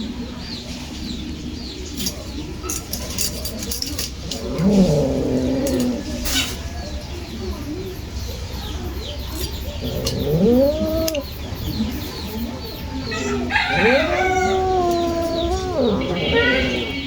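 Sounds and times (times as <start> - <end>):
cat meowing: 4.4 - 6.5, 9.8 - 11.4, 13.2 - 17.0.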